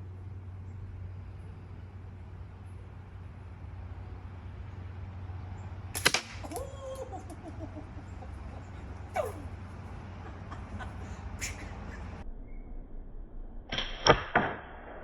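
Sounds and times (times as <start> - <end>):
steady low hum: 0.0 - 13.7
slingshot snap: 5.9 - 7.1, 13.7 - 14.7.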